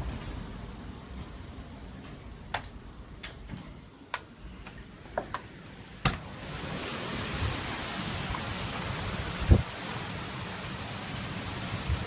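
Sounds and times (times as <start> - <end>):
steady rain hiss: 0.0 - 12.0
low storm rumble: 6.2 - 12.0.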